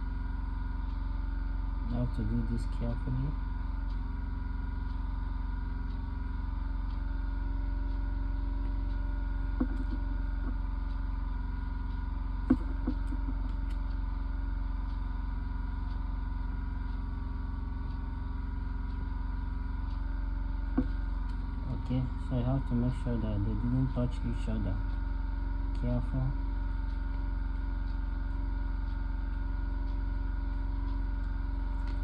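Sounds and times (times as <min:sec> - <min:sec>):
steady low hum: 0:00.0 - 0:32.0
light taps: 0:09.6 - 0:10.6.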